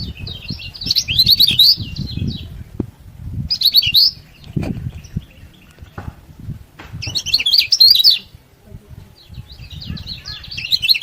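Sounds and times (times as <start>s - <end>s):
songbird twittering chatter: 0.0s - 2.8s, 3.4s - 8.4s, 9.0s - 11.0s
rough low rumble: 0.0s - 7.4s
faint bird chirps: 7.0s - 8.4s, 9.1s - 11.0s.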